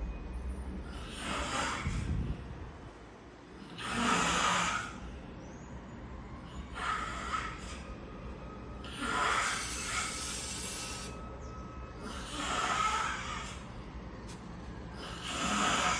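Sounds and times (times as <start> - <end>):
man snoring: 3.7 - 5.0, 8.8 - 11.1, 12.0 - 13.6, 15.0 - 15.9.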